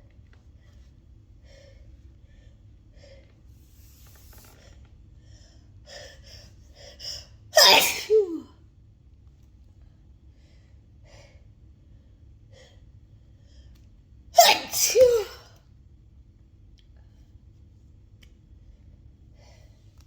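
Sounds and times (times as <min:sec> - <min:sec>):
person sneezing: 0:07.6 - 0:08.5, 0:14.4 - 0:15.5.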